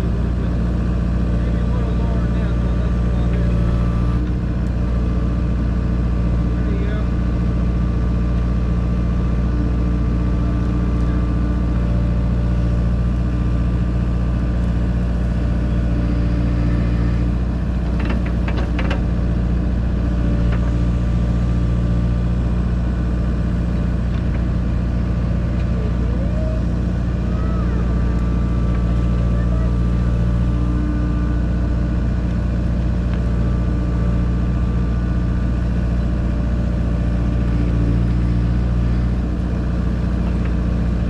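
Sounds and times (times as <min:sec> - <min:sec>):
heavy diesel engine running: 0:00.0 - 0:41.0.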